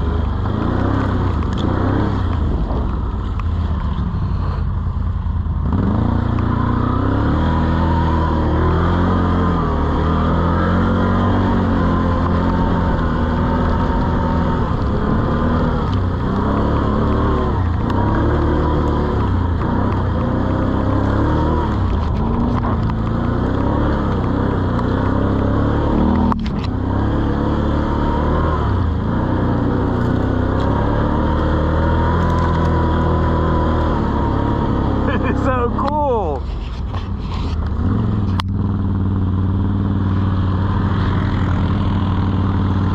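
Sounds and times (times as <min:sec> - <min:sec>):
quad engine revving: 0:00.0 - 0:02.9, 0:05.6 - 0:36.4.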